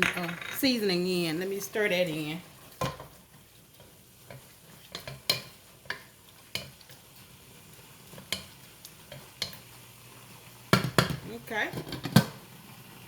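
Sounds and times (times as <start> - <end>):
spoon scraping and knocking pan: 0.0 - 1.7, 2.6 - 7.1, 8.1 - 9.7, 10.7 - 12.4
faint sizzle: 0.4 - 13.0.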